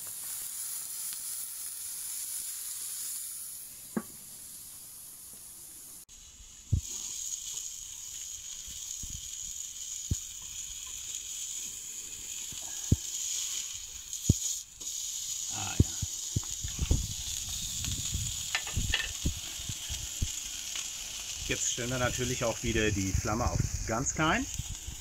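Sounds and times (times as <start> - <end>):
burger patties sizzling on grill: 0.0 - 25.0.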